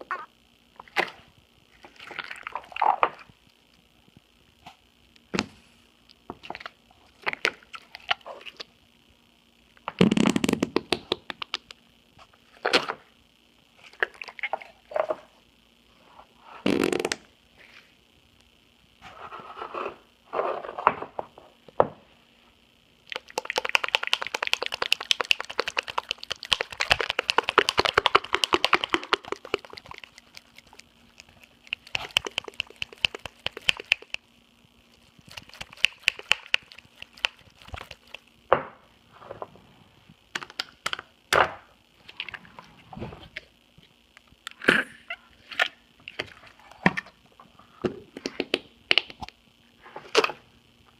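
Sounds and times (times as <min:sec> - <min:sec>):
slime squelching and popping: 0:23.0 - 0:38.3.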